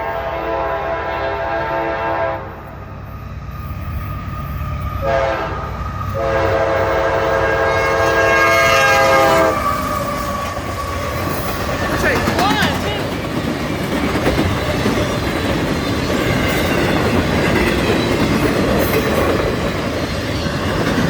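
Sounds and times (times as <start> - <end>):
locomotive air horn blasts: 0.0 - 2.6, 5.0 - 9.8
train rumble: 0.0 - 21.0.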